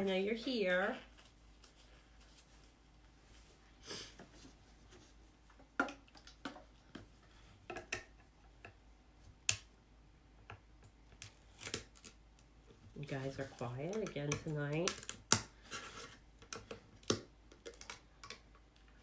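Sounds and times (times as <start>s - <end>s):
soft rustle: 0.0s - 5.6s.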